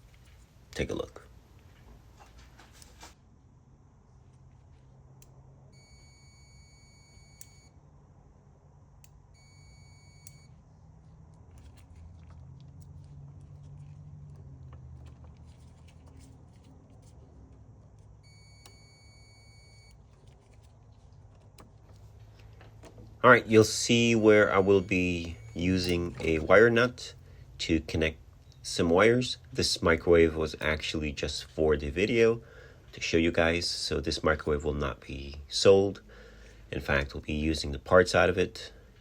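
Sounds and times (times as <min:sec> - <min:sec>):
multimeter continuity beep: 0:05.7 - 0:07.8, 0:09.3 - 0:10.6, 0:18.2 - 0:20.0, 0:24.4 - 0:26.2.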